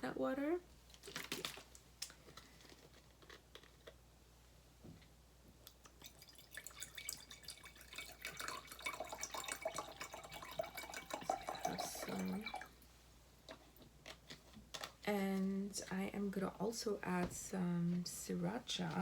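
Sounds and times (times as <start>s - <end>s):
liquid dripping and trickling: 5.7s - 12.9s.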